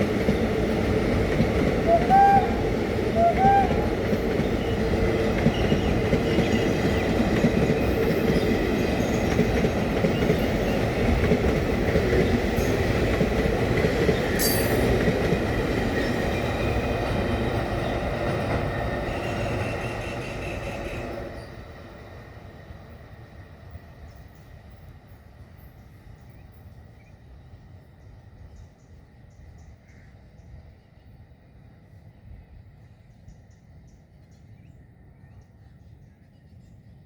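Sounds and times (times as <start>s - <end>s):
train rumble and clatter: 0.0s - 37.0s
locomotive horn toot: 1.9s - 3.9s.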